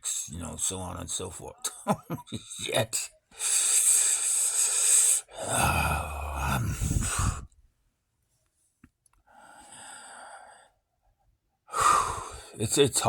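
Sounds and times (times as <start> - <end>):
quiet breath: 3.3 - 7.6, 9.2 - 12.6
man sighing heavily: 5.4 - 7.5, 11.7 - 12.4.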